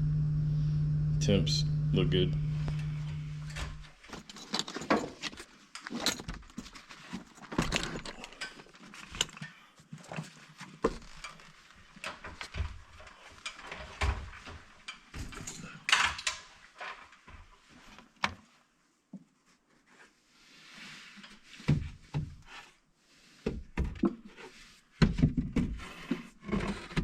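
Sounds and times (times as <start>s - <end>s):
steady low hum: 0.0s - 4.0s
tools clicking and clattering: 3.5s - 9.4s.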